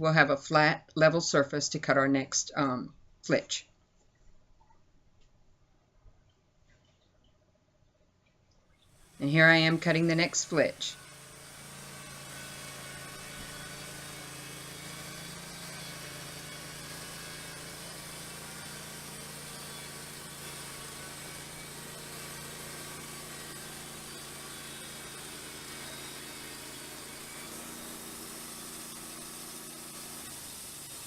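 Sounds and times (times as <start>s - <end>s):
sawmill engine running: 9.0s - 31.0s.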